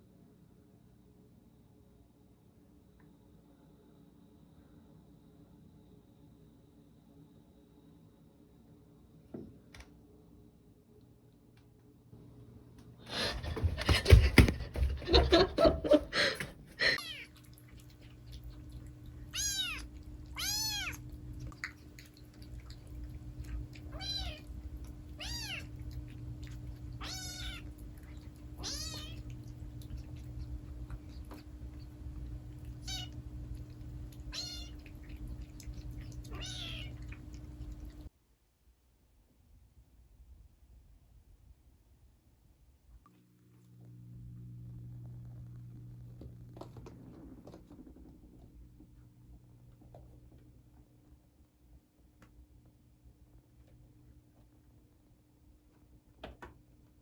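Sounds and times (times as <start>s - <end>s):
cat meowing: 16.9s - 17.4s, 19.3s - 21.1s, 23.9s - 24.6s, 25.2s - 25.9s, 26.9s - 29.4s, 32.7s - 33.2s, 34.2s - 35.2s, 35.8s - 37.2s.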